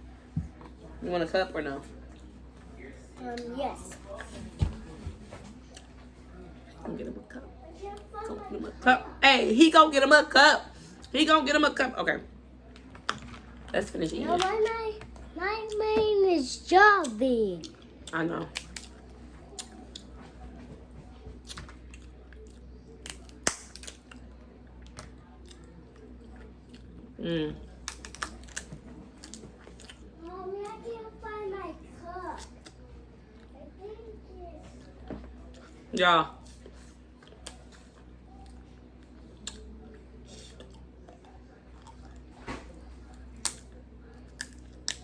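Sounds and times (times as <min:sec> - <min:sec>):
chewing shellfish: 0:21.4 - 0:30.2, 0:36.6 - 0:45.0.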